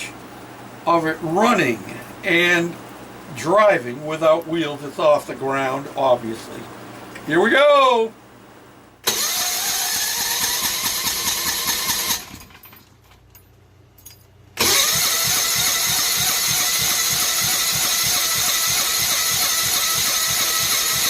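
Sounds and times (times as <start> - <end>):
small engine cranking: 9.0 - 12.7, 14.6 - 21.0.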